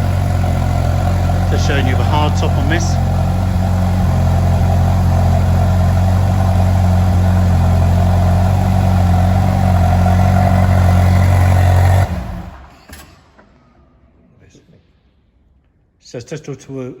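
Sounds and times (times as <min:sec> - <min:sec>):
car engine idling: 0:00.0 - 0:12.8.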